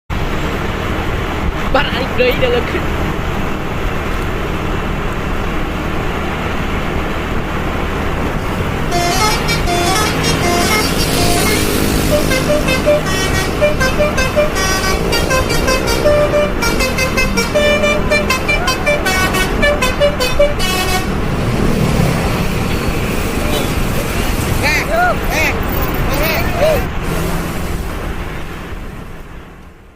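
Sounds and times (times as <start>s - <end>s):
engine running: 0.1s - 29.9s
traffic noise: 0.1s - 29.9s
bus musical horn: 8.5s - 21.4s, 22.6s - 24.6s, 25.5s - 28.2s.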